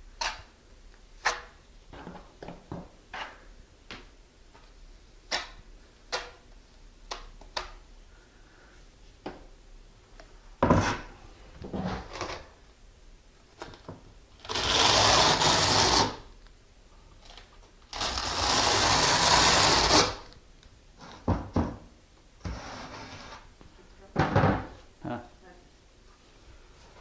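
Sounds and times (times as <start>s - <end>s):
trowel scraping tile: 14.5s - 16.2s, 17.9s - 20.3s, 22.4s - 23.5s.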